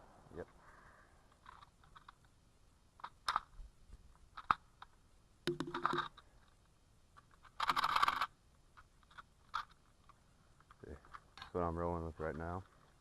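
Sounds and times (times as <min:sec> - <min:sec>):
cartridges rattling: 0:05.5 - 0:06.2.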